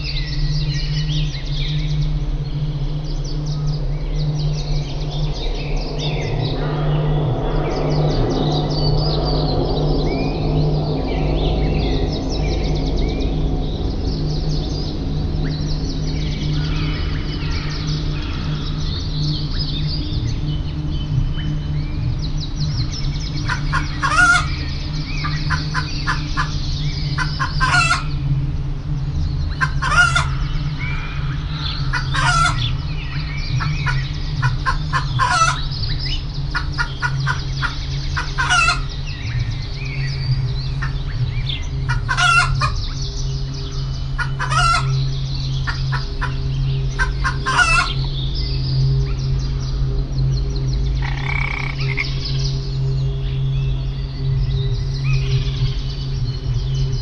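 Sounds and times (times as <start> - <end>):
steady low hum: 0.0 - 57.0
chickens clucking: 23.5 - 24.5, 25.2 - 26.5, 27.2 - 28.1, 29.6 - 30.4, 31.9 - 32.7, 33.6 - 35.6, 36.5 - 38.9, 41.9 - 42.8, 44.2 - 45.0, 45.7 - 46.4, 47.0 - 48.0.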